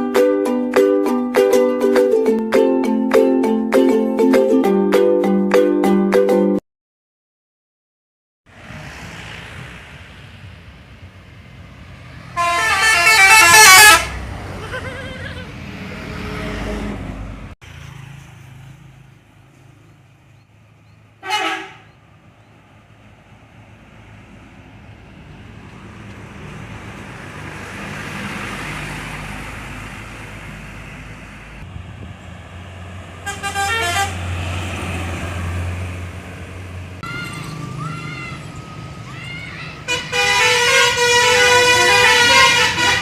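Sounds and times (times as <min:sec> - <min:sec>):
bus engine and road noise: 0:00.0 - 0:06.6, 0:08.5 - 0:43.0
multi-tone musical horns: 0:12.4 - 0:14.2, 0:21.2 - 0:21.9, 0:33.2 - 0:34.3, 0:39.9 - 0:43.0.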